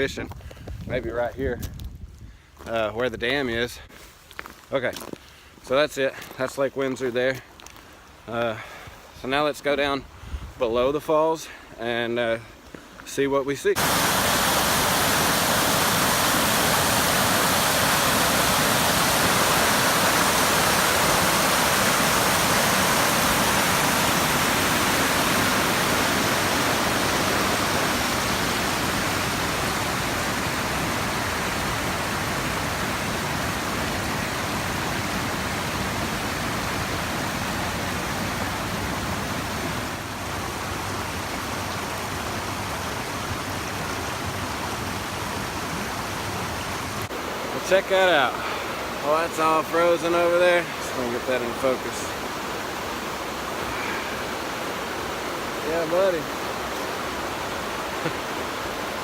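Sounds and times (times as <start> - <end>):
small waterfall rushing: 13.7 - 59.0.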